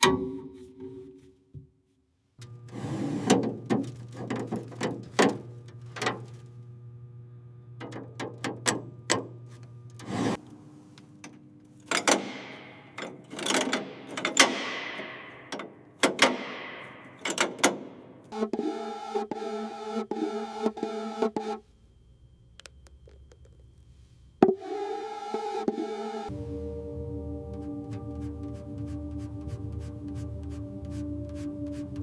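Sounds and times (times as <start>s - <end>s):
steady low hum: 2.4s - 32.0s
hand tools clicking and knocking: 11.9s - 17.9s
music with sustained tones: 25.1s - 32.0s.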